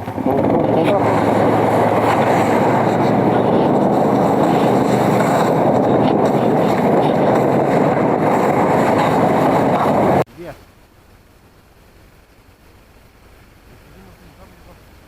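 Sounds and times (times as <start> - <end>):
snowmobile engine running: 0.0 - 10.2.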